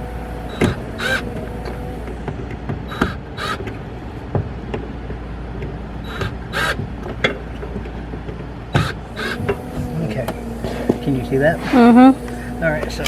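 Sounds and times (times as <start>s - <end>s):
bird cawing: 0.0s - 4.3s, 6.0s - 7.1s, 8.7s - 13.0s
steady low hum: 0.0s - 13.0s.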